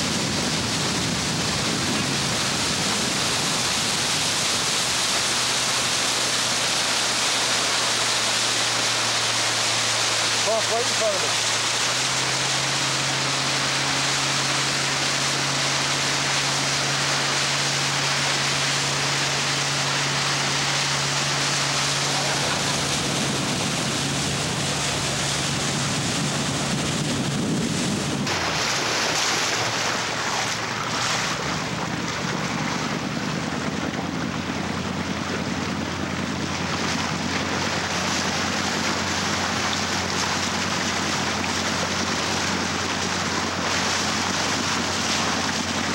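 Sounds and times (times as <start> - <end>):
wind buffeting microphone: 0.0 - 5.4, 21.0 - 45.9
boat engines: 0.0 - 45.9
rushing water: 0.0 - 45.9.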